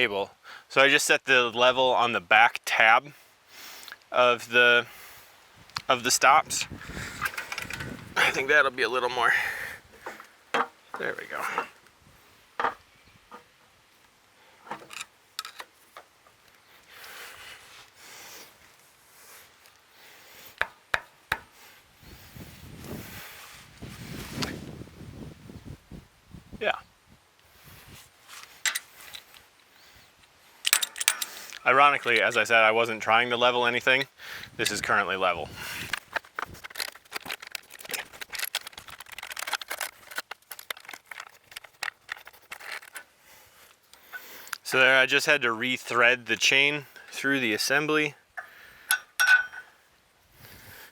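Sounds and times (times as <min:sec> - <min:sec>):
metal clicks and knocks: 0:07.2 - 0:08.0, 0:10.0 - 0:11.8, 0:12.6 - 0:13.5, 0:14.6 - 0:16.1, 0:28.6 - 0:28.9, 0:30.6 - 0:32.4
roller chain clicking and rattling: 0:07.2 - 0:08.0, 0:30.7 - 0:32.5
soft scraping by hands: 0:15.6 - 0:19.9, 0:21.6 - 0:24.9, 0:27.5 - 0:30.6.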